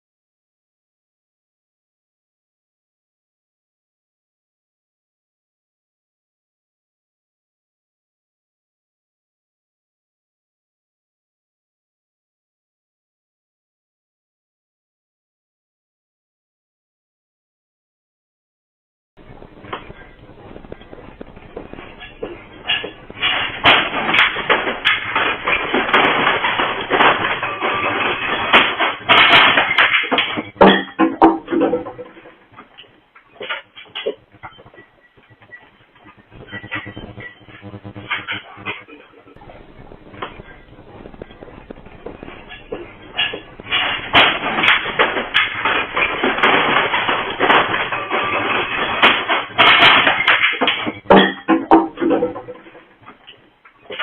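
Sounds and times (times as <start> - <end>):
objects rattling and banging: 19.2 - 54.0.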